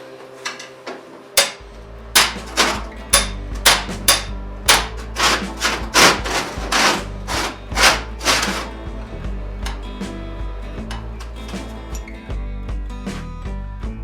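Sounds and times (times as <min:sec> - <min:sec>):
background music: 0:00.0 - 0:14.0
hammer blows on metal: 0:01.4 - 0:09.0.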